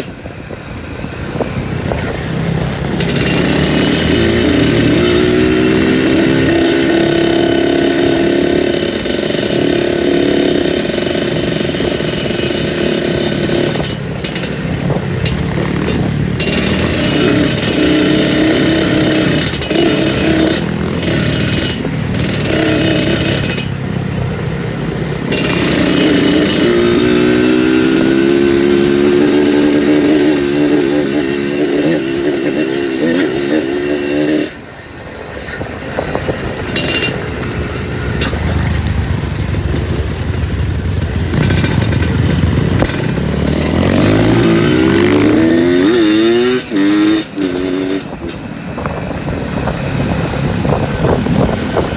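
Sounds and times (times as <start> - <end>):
two-stroke motorcycle engine revving: 0.0 - 51.9.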